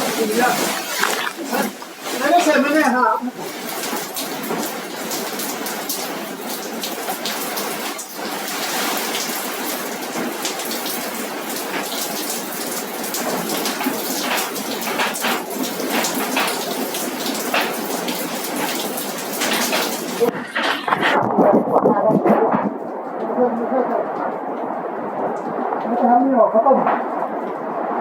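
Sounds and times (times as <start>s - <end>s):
heavy rain: 0.0s - 20.6s.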